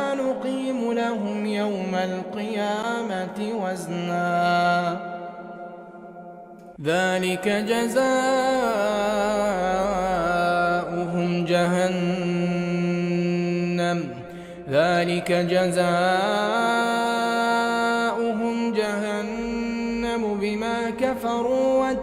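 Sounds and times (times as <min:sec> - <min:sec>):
man chanting melodically: 0:06.8 - 0:22.0.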